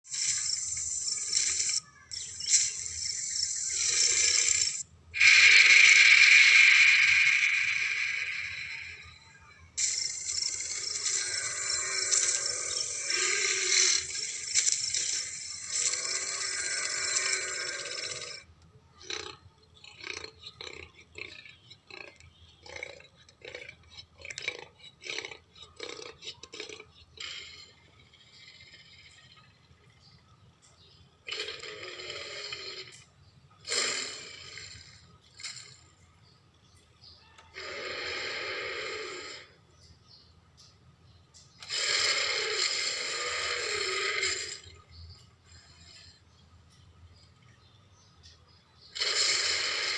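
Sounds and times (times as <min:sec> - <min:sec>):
raspy hissing creature growls: 0:00.1 - 0:18.5, 0:31.3 - 0:33.0, 0:33.6 - 0:35.8, 0:37.5 - 0:39.6, 0:41.7 - 0:44.8, 0:48.9 - 0:49.9.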